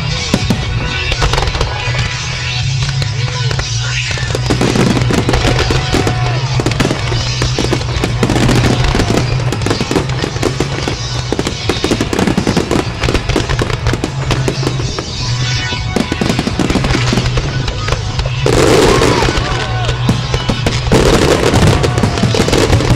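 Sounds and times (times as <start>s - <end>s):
fireworks bangs and crackles: 0.0s - 22.9s
music playing: 0.0s - 22.9s.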